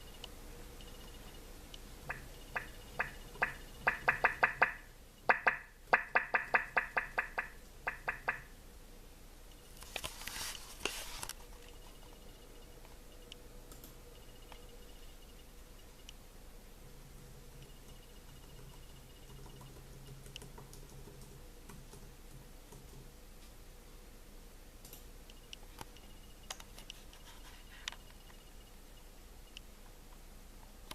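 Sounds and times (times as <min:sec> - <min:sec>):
short rustling: 0:09.8 - 0:11.5.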